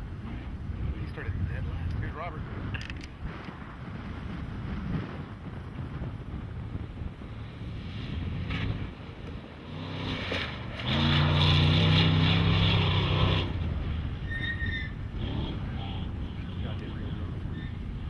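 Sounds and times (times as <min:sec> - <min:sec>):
vehicle engine at high revs: 0:07.2 - 0:18.0.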